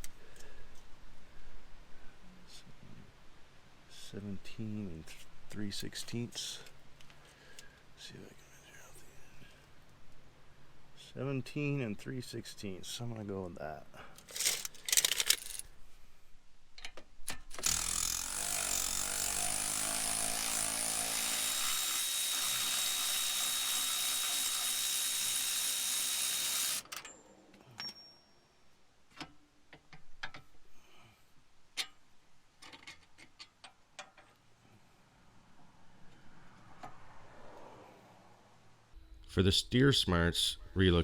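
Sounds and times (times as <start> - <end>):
metallic clicks of tools: 14.2 - 15.7
handheld power tool running: 17.5 - 26.9.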